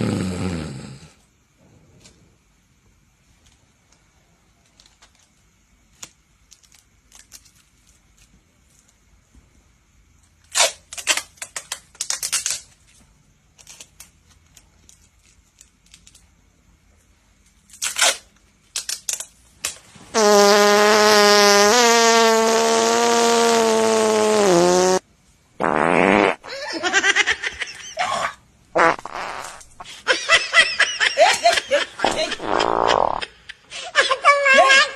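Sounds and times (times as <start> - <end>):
fart-like blasts: 20.2 - 25.0, 25.6 - 26.5, 28.8 - 29.9, 32.0 - 33.2.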